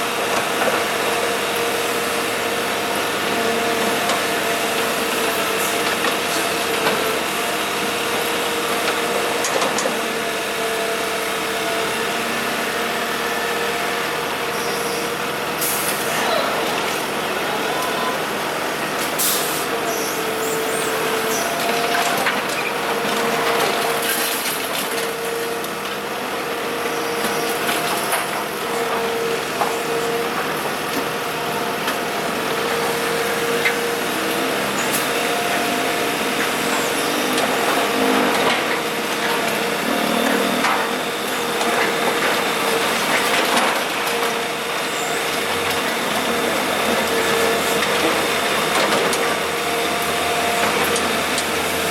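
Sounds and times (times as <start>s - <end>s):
excavator engine and hydraulics: 0.0s - 51.9s
hydraulic whine: 26.9s - 51.9s.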